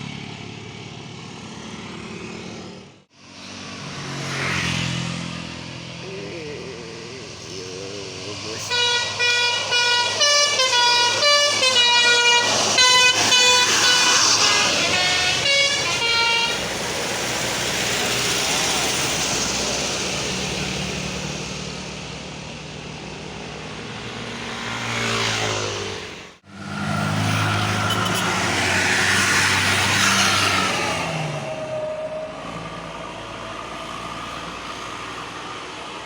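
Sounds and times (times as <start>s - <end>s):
bus engine and tyre noise: 0.0s - 36.0s
multi-tone bus horn tune: 8.5s - 16.9s, 27.7s - 28.6s.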